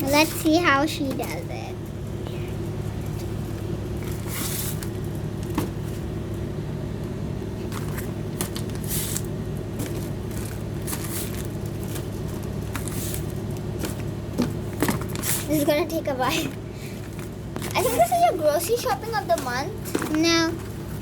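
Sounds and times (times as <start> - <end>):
steady low hum: 0.0 - 21.0
bag rustling and crinkling: 2.5 - 6.2, 7.6 - 15.7.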